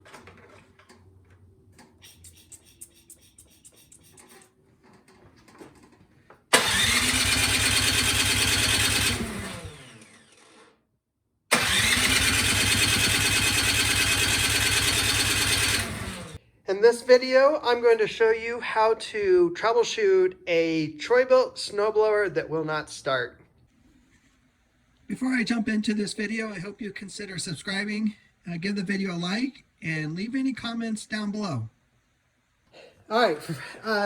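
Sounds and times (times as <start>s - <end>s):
snowblower engine running: 6.5s - 10.6s, 11.5s - 16.4s.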